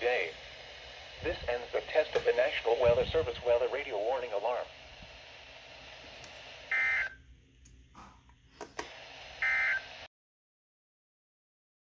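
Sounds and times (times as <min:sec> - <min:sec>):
faint radio hiss: 0:00.0 - 0:10.1.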